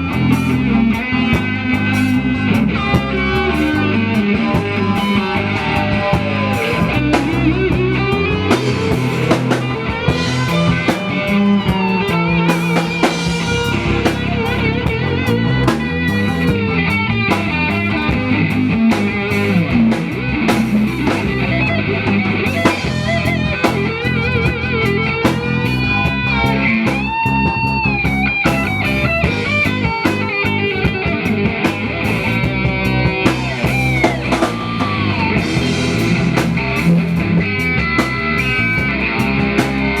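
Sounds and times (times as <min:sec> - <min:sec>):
drum kit: 0:00.0 - 0:40.0
lead guitar with bent notes: 0:00.0 - 0:40.0.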